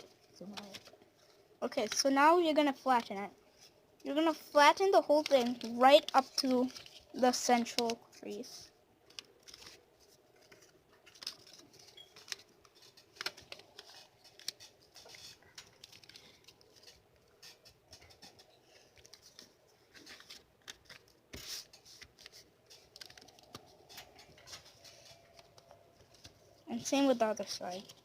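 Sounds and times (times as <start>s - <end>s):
paper being folded: 0.0s - 28.0s.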